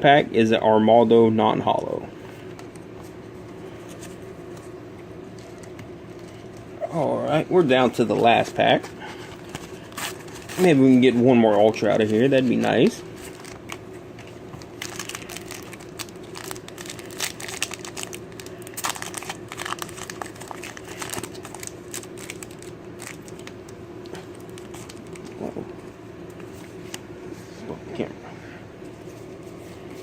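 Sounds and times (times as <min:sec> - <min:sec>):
steady low hum: 0:00.0 - 0:30.0
foil wrapper crinkling and tearing: 0:09.3 - 0:25.4.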